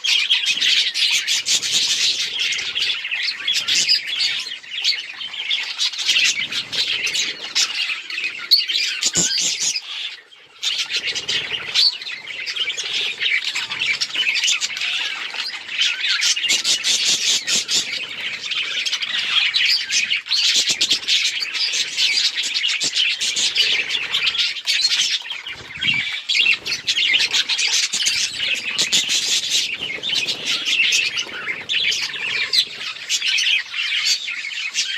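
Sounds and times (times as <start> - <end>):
budgerigars chattering: 0.0 - 34.9.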